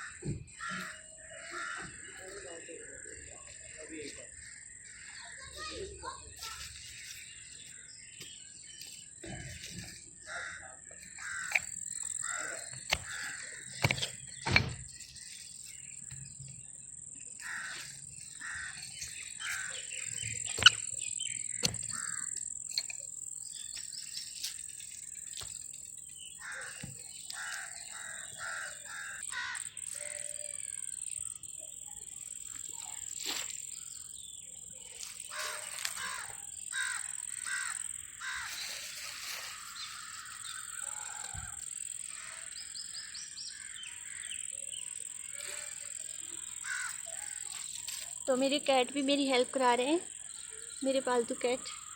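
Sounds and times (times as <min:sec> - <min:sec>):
birds calling harshly: 0:00.0 - 0:51.9
sharp knocks: 0:13.8 - 0:14.9.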